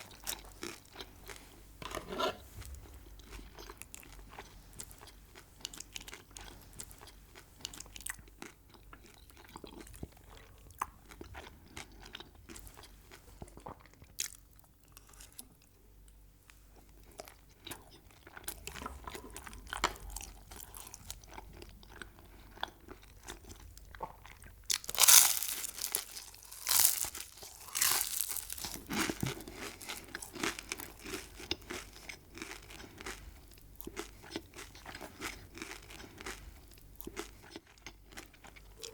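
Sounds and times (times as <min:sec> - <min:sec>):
chewing crunchy food: 0:00.0 - 0:38.9
loud crunchy bites: 0:24.7 - 0:31.8.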